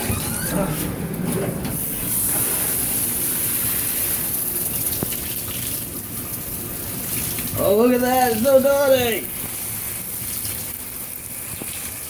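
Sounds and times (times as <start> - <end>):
shower water splashing: 0.0 - 12.0.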